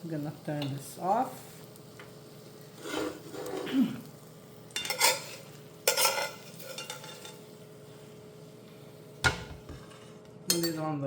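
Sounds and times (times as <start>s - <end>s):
spatula scraping a frying pan: 2.7s - 3.7s, 4.8s - 7.5s, 9.6s - 10.2s.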